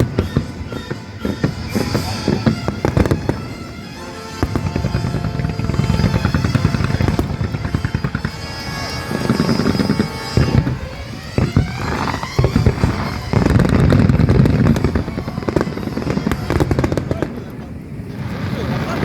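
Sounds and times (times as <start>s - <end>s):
music playing: 0.0s - 18.5s
fireworks booming and crackling: 0.0s - 19.0s.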